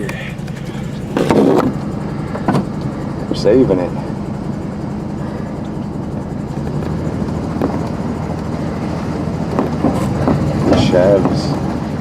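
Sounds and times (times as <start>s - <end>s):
truck engine and road noise: 0.0s - 12.0s.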